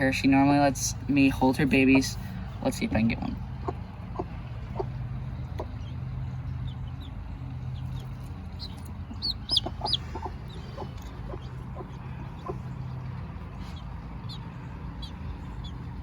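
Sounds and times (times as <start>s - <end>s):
steady low hum: 0.0s - 16.0s
hen clucking: 3.3s - 16.0s
chick peeping: 3.6s - 6.0s, 6.6s - 16.0s.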